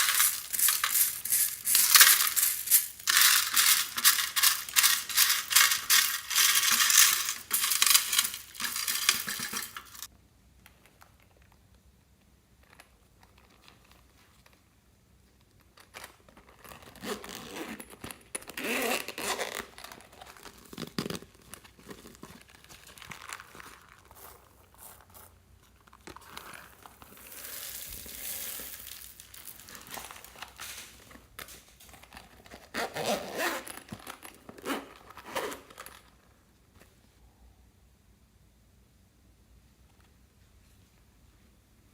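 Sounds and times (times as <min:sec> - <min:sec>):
beads rattling: 0:00.0 - 0:10.1, 0:26.4 - 0:32.2.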